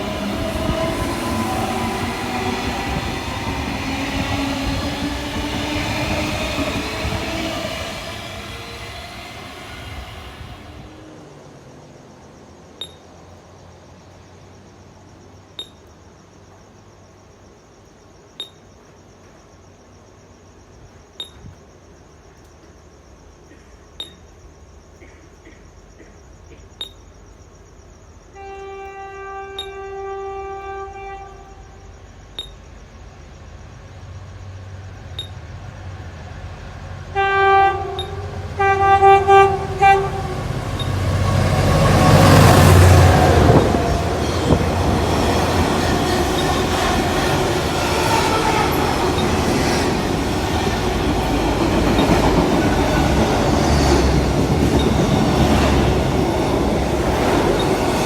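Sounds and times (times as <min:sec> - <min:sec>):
train wheels rumbling on rails: 0:00.0 - 0:11.7, 0:28.4 - 0:58.0
train horn blasts: 0:28.3 - 0:31.8, 0:37.1 - 0:44.7.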